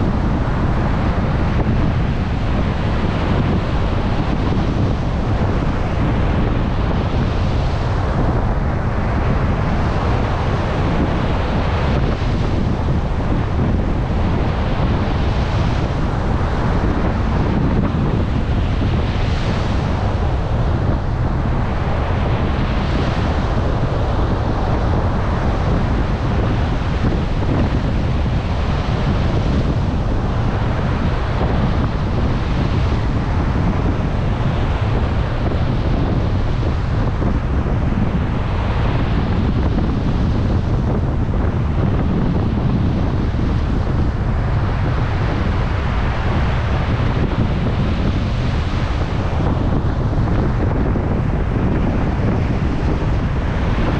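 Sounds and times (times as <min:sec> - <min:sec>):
heavy surf breaking: 0:00.0 - 0:53.9
wind buffeting microphone: 0:00.0 - 0:53.9.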